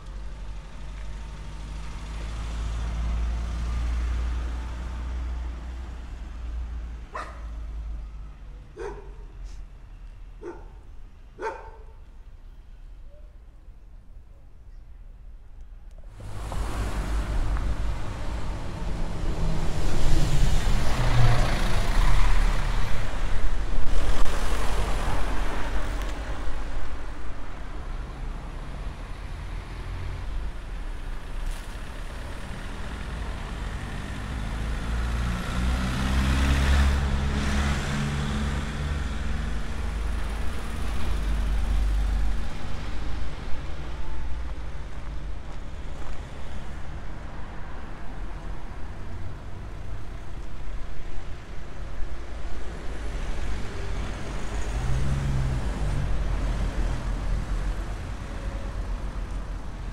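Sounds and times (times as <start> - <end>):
vehicles driving past: 0.0 - 13.0, 16.0 - 59.9
vehicle accelerating: 0.2 - 7.4, 16.1 - 26.2, 31.2 - 43.9.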